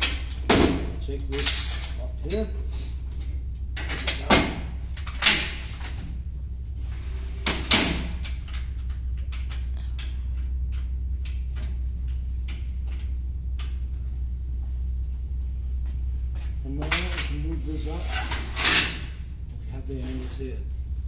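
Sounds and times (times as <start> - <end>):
steady low hum: 0.0 - 21.0
metal clanks and knocks: 3.1 - 6.2, 16.7 - 17.6.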